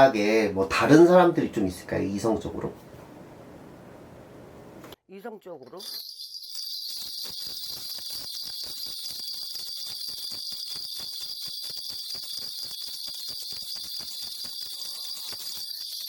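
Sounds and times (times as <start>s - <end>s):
bells jingling: 5.7s - 16.0s.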